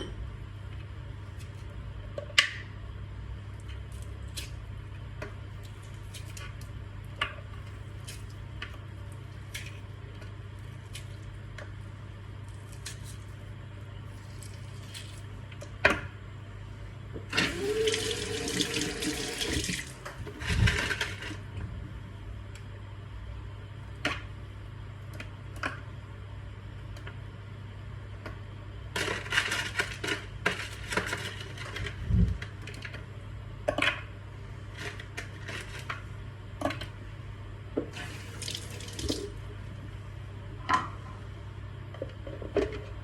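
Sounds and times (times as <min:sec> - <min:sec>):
blender churning liquid: 0:17.3 - 0:21.0.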